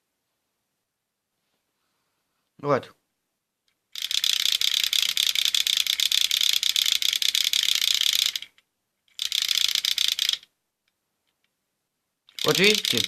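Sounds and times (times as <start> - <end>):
small motor clattering rapidly: 3.9 - 10.5, 12.3 - 13.0.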